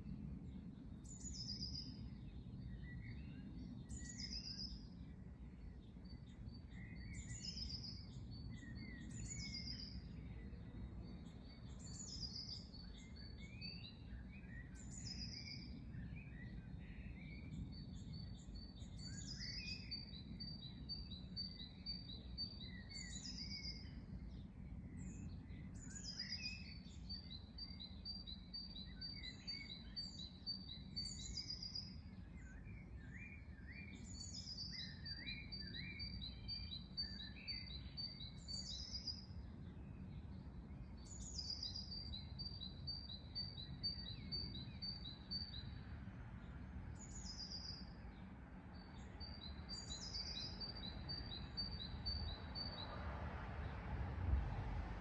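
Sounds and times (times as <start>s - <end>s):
bird singing trilling song: 0.0s - 53.8s
birds chirping: 25.0s - 52.8s.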